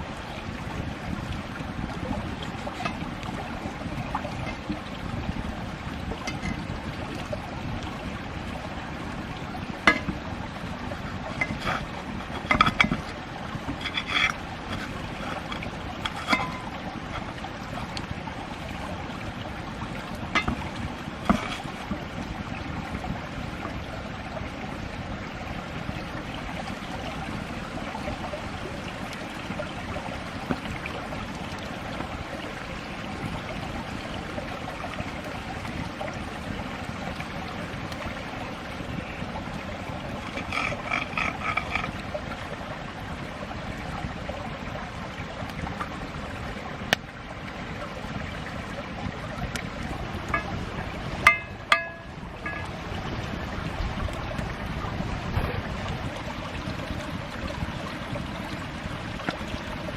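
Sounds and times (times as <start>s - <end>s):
sharp clinks and knocks: 51.2s - 52.7s.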